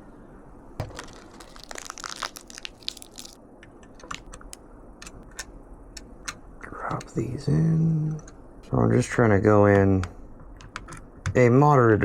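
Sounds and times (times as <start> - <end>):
crinkly rustle: 0.8 - 3.4.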